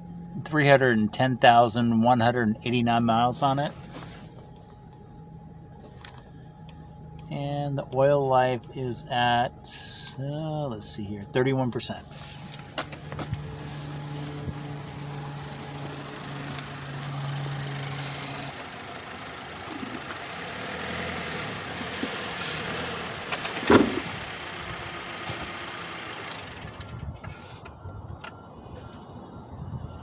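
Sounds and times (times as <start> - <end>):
car engine idling: 0.0 - 29.3
loud thump: 23.6 - 24.1.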